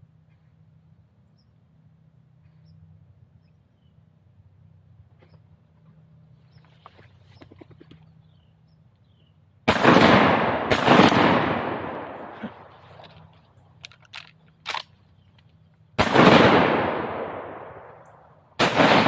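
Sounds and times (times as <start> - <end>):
shotgun blasts echoing: 9.7 - 12.7, 16.0 - 19.0.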